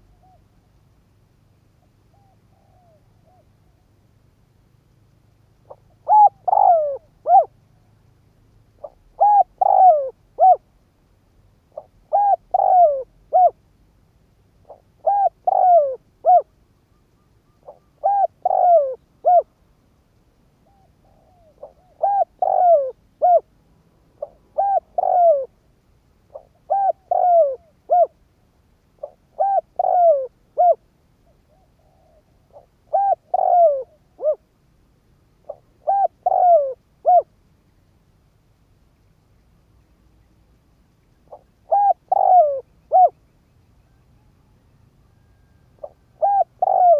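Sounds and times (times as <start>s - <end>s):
dove cooing: 2.1s - 3.8s, 5.6s - 7.8s, 8.8s - 10.7s, 11.7s - 13.6s, 14.6s - 16.6s, 17.6s - 19.5s, 20.6s - 23.5s, 24.2s - 25.6s, 26.3s - 28.2s, 29.0s - 34.5s, 35.4s - 37.3s, 41.3s - 43.2s, 43.9s - 46.9s.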